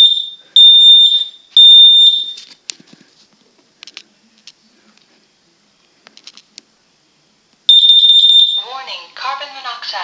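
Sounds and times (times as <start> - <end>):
high-pitched alarm beep: 0.0 - 2.5, 7.7 - 8.8.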